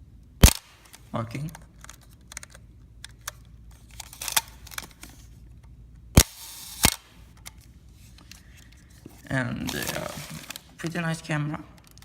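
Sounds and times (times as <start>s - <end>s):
brief shutter buzz: 6.2s - 7.2s.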